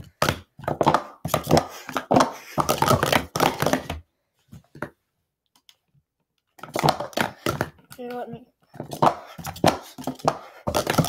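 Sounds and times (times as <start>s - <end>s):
plastic cups clacking: 0.0s - 4.0s, 6.5s - 11.0s.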